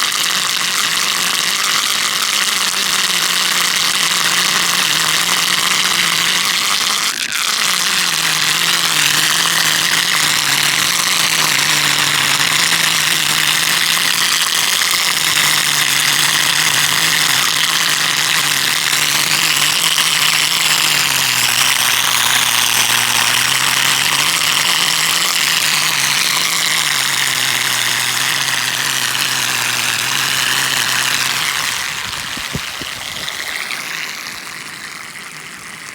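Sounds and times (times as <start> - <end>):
whirlpool whistling: 1.1 - 35.9
rushing water: 24.1 - 35.9.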